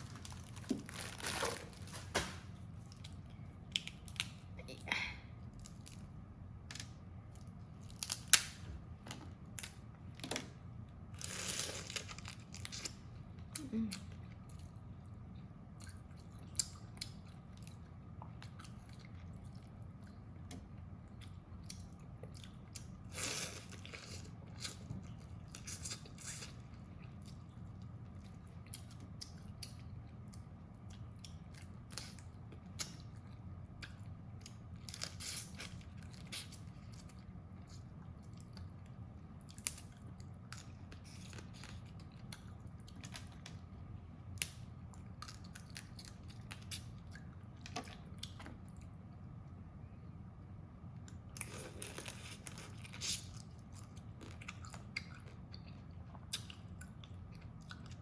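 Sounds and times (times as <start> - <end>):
steady low hum: 0.0 - 58.0
person chewing and crunching: 21.1 - 43.5, 51.3 - 58.0.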